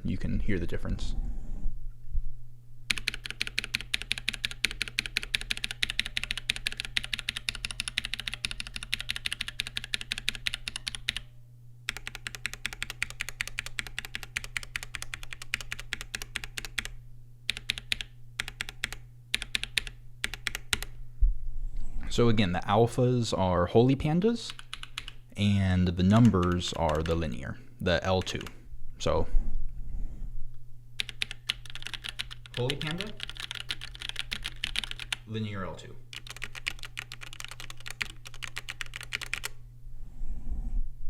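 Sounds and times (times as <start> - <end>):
steady low hum: 0.0 - 41.0
fast typing on keyboard: 2.9 - 11.3, 11.9 - 20.9, 24.4 - 25.2, 26.0 - 27.4, 28.1 - 28.6, 31.0 - 35.3, 36.1 - 39.6.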